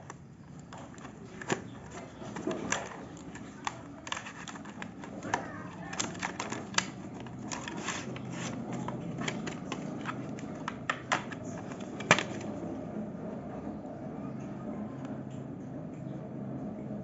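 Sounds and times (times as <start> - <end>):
packaging clicks and rustles: 0.0 - 12.6
low steady hum: 0.0 - 17.0.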